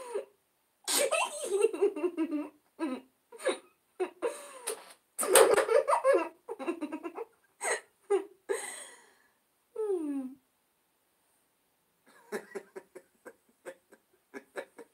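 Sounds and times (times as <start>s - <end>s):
recorded laughs and giggles: 1.1s - 9.0s, 12.1s - 14.9s.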